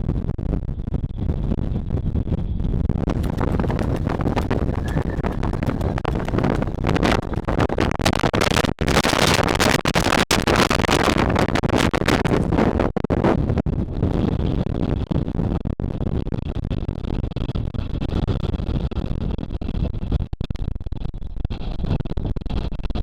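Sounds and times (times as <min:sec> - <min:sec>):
wind gusting against microphone: 0:03.0 - 0:12.9.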